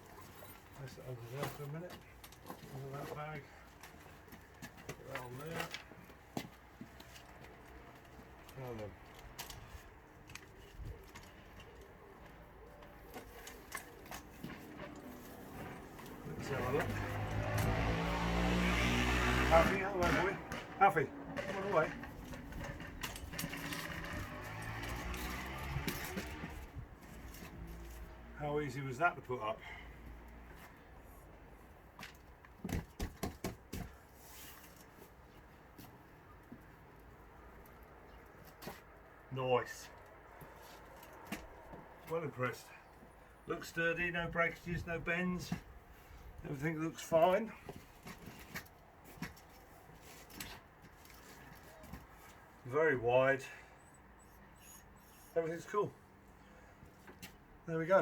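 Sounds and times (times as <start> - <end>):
sharp knocks and clicks of frame: 32.6 - 33.9.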